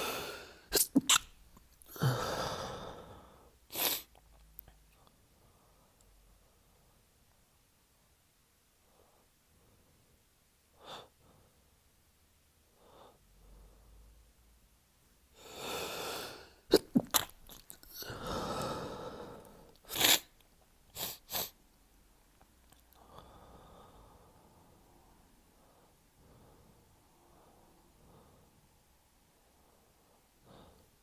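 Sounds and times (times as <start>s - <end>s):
noisy breathing: 0.0s - 0.7s
man sneezing: 0.0s - 1.2s.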